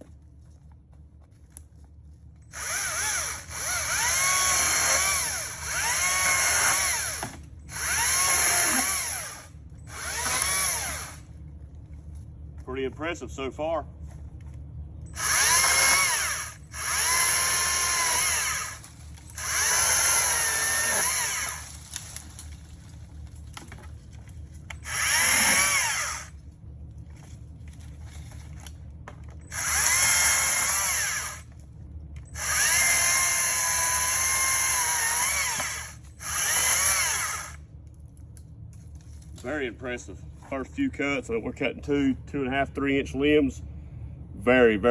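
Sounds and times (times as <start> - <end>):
low rumble: 0.0 - 44.9
battery chainsaw motor whining: 2.5 - 11.2, 15.1 - 22.2, 24.8 - 26.4, 29.5 - 31.5, 32.3 - 37.6.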